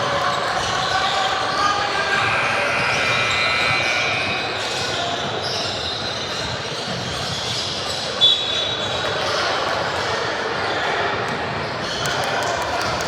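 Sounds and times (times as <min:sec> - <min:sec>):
voices in echoing hall: 0:00.0 - 0:13.0
sneakers squeaking: 0:04.6 - 0:08.9.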